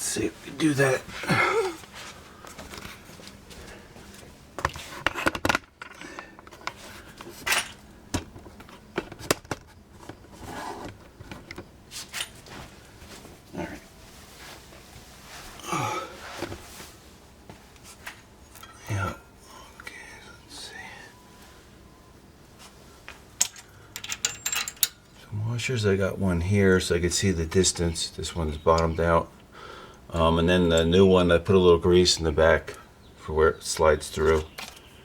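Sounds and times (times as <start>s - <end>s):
soft breath sounds: 15.2s - 17.0s, 18.6s - 24.0s, 29.4s - 30.1s
small metal parts clicking: 23.4s - 25.2s.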